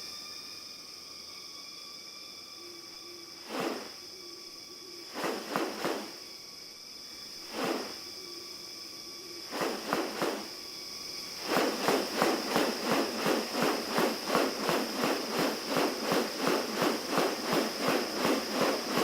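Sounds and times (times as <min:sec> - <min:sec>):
high-pitched insect drone: 0:00.0 - 0:19.0
rustling bursts: 0:03.5 - 0:03.9, 0:05.1 - 0:06.2, 0:07.5 - 0:08.0, 0:09.5 - 0:10.5, 0:11.4 - 0:19.0.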